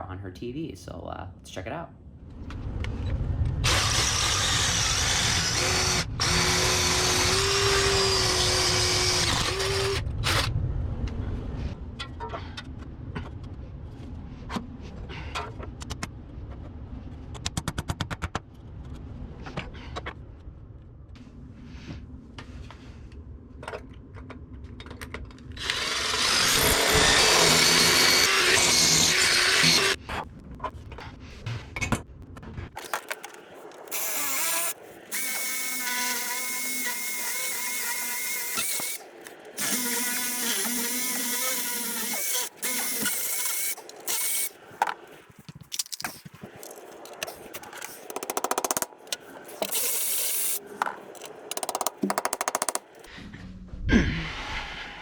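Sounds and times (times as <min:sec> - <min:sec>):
power drill drilling into concrete: 0:03.6 - 0:10.5, 0:25.6 - 0:30.0, 0:33.9 - 0:39.0, 0:39.6 - 0:44.6, 0:49.6 - 0:50.6
clicks and knocks: 0:44.8 - 0:49.8, 0:50.8 - 0:52.9.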